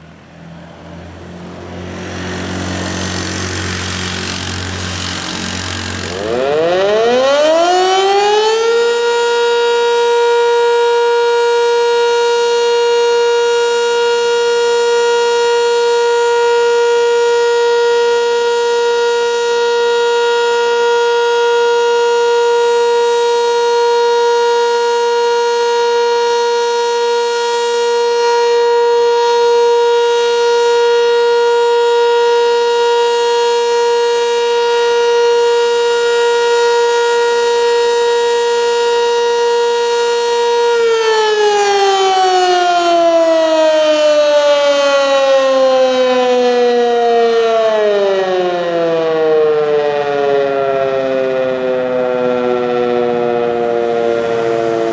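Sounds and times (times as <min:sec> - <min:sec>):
tornado siren winding up: 0:01.4 - 0:54.9.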